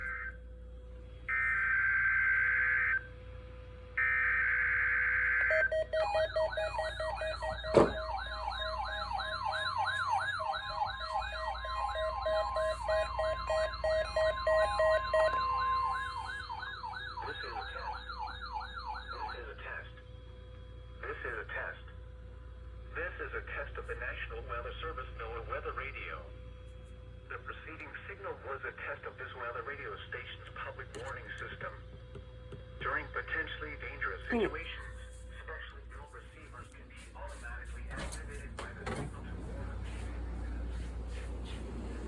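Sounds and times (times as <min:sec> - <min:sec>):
siren-like warble: 0:01.3 - 0:03.2, 0:03.9 - 0:19.6
rapid beeping: 0:05.5 - 0:16.6
steady tone: 0:05.5 - 0:16.6.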